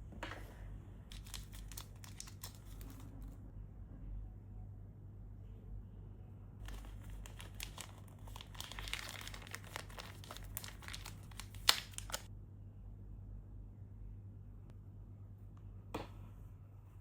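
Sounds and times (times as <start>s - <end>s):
plastic packaging crinkling: 1.1s - 3.3s, 6.6s - 12.3s.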